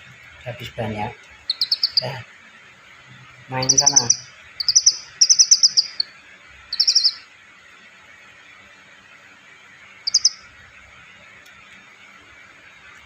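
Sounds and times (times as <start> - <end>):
starling high chirps: 1.4 - 2.2, 3.6 - 7.3, 10.0 - 10.5.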